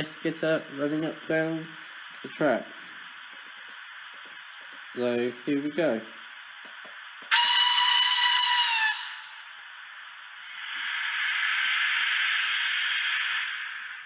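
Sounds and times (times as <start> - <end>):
steam hiss: 0.0 - 14.0
steam whistle: 7.3 - 9.5, 10.5 - 14.0.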